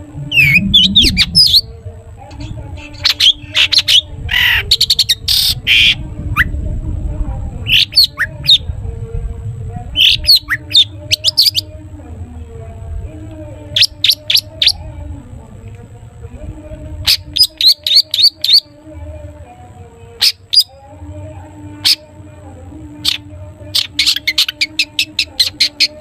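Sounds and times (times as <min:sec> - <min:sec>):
shrike calling in sharp high notes: 0:00.0 - 0:01.7
faint low hum: 0:00.0 - 0:26.0.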